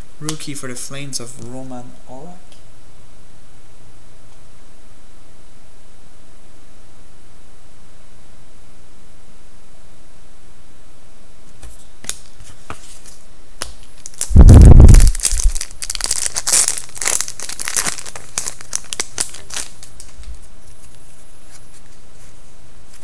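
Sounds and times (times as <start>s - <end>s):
wrapper tearing and crinkling: 14.0s - 20.1s.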